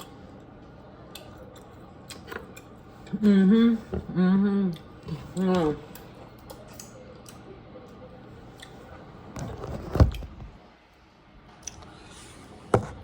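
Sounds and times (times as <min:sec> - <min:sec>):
person chewing: 0:00.0 - 0:03.2.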